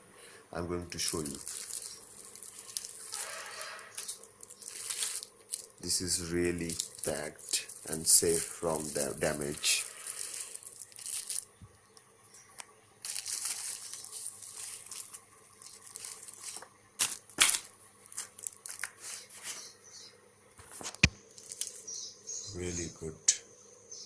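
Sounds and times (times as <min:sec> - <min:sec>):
packaging wrap crinkling and tearing: 0:01.0 - 0:11.6, 0:13.0 - 0:19.5, 0:21.3 - 0:21.9.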